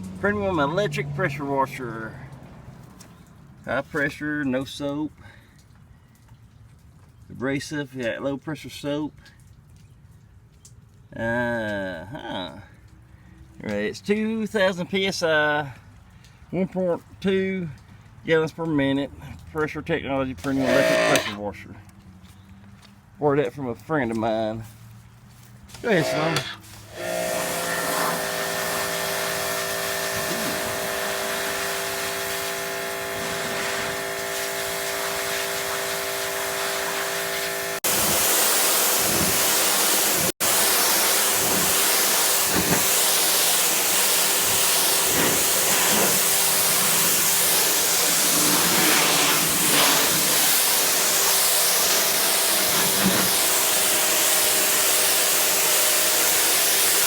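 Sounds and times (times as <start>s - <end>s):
motor hum: 20.4s - 21.4s, 25.8s - 57.0s
pressure washer water jet hiss: 20.4s - 21.4s, 25.8s - 57.0s.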